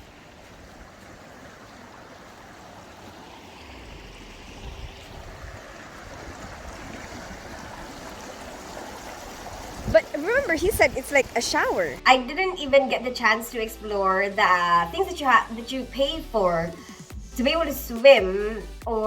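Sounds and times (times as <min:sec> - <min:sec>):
stream and small waterfall rushing: 0:00.0 - 0:12.0.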